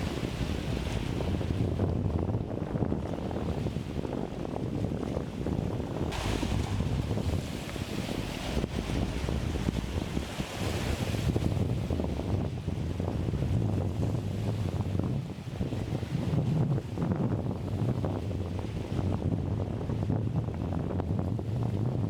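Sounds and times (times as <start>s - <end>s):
waves washing: 0.0s - 16.6s
wind buffeting microphone: 0.0s - 22.0s.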